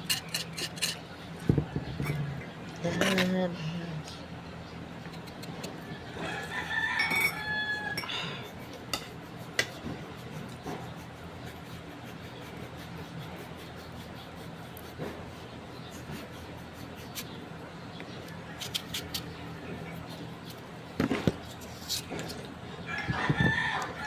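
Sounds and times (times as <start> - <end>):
rooster crowing: 5.8 - 8.4, 22.8 - 24.0.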